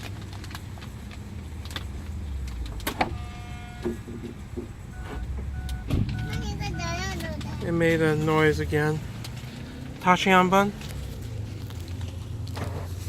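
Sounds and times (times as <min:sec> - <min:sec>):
minivan door closing: 0:02.7 - 0:07.4
short beeping tones: 0:04.9 - 0:06.9.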